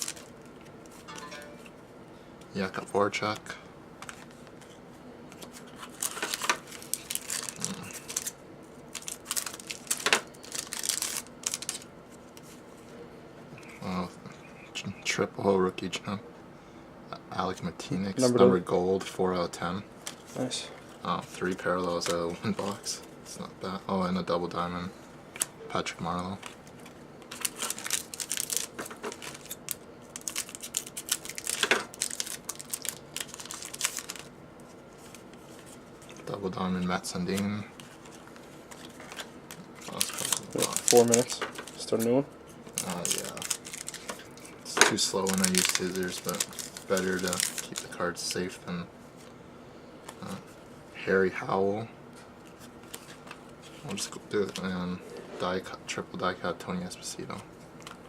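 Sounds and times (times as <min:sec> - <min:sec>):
wrapper crinkling and cards rustling: 0:00.0 - 0:01.7, 0:04.0 - 0:12.9, 0:26.1 - 0:48.5, 0:52.4 - 0:54.7.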